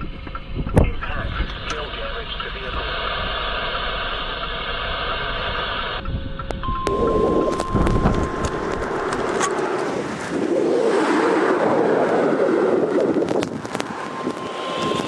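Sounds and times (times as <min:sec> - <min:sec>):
vehicle noise: 0:00.0 - 0:15.0
wind: 0:00.0 - 0:15.0
electronic beep: 0:06.0 - 0:09.8, 0:13.8 - 0:15.0.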